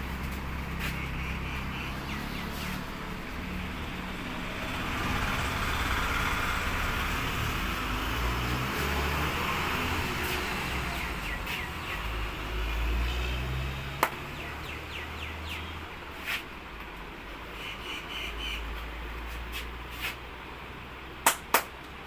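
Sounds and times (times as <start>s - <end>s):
passing vehicles rumble: 0.0s - 22.0s
traffic hum: 0.0s - 22.0s
bird chirps: 10.8s - 12.2s, 14.1s - 15.8s, 17.6s - 18.8s
sharp crack: 21.2s - 21.8s.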